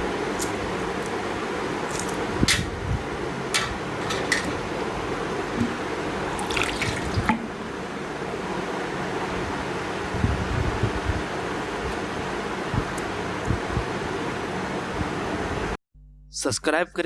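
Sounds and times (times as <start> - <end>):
water splashing and dripping: 5.6 - 7.6.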